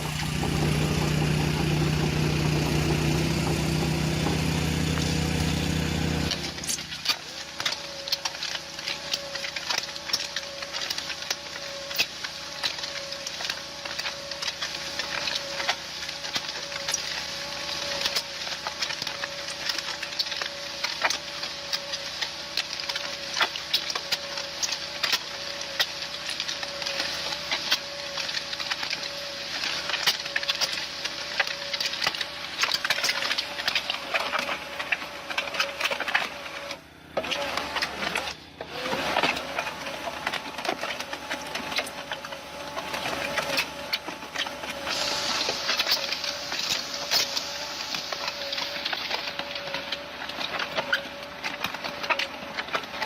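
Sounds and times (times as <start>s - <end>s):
constant hum: 0.0s - 53.0s
machinery clattering and hissing: 44.6s - 52.3s.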